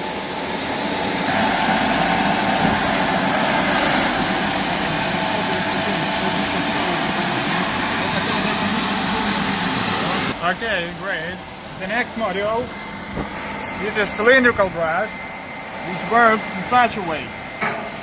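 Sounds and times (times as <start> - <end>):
water spraying: 0.0 - 14.4
machine running noise: 0.0 - 18.0.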